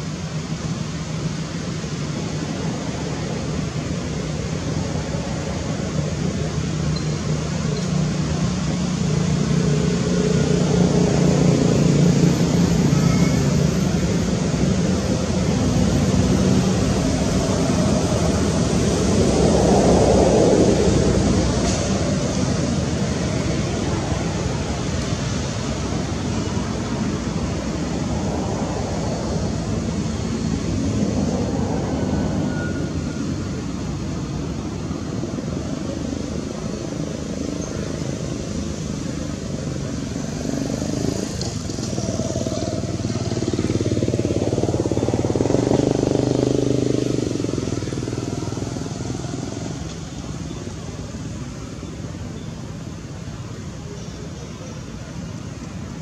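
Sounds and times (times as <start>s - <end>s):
motor traffic rumble: 0.0s - 56.0s
vehicle passing: 7.6s - 37.4s, 38.3s - 50.8s.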